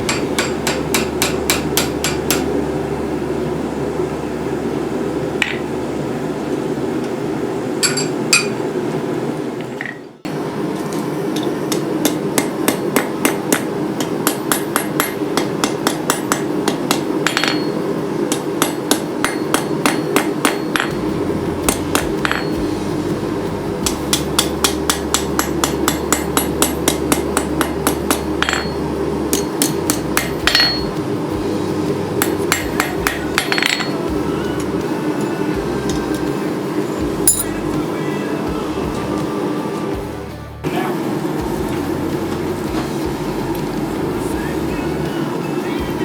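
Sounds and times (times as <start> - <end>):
hammer striking steel on anvil: 0.0 - 2.6, 7.8 - 8.6, 11.4 - 22.8, 23.8 - 31.0, 32.2 - 34.1, 37.2 - 37.7
steady hum: 0.0 - 46.0.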